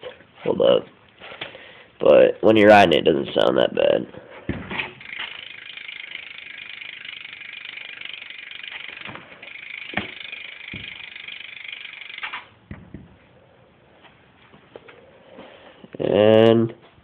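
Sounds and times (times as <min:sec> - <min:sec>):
bike hub ratcheting clicks: 0:04.9 - 0:12.6
sharp knocks: 0:09.9 - 0:11.0, 0:12.7 - 0:13.2.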